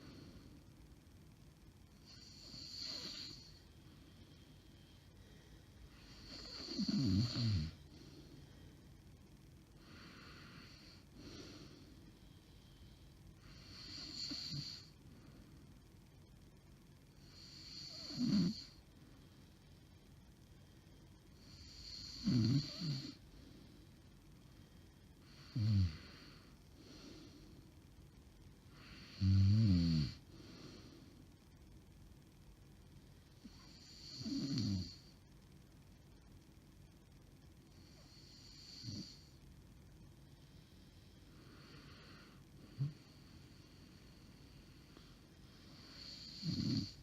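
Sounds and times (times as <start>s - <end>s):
woman snoring heavily: 2.0s - 3.6s, 5.9s - 7.8s, 13.4s - 14.9s, 17.4s - 18.8s, 21.4s - 23.2s, 25.3s - 26.5s, 28.8s - 30.2s, 33.6s - 35.0s, 38.1s - 39.2s, 45.8s - 47.0s.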